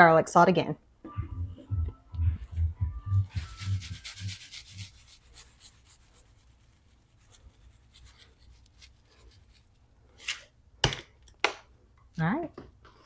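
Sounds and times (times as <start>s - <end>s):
salt shaker shaking: 3.2s - 9.7s
falling grains hiss: 3.3s - 4.9s.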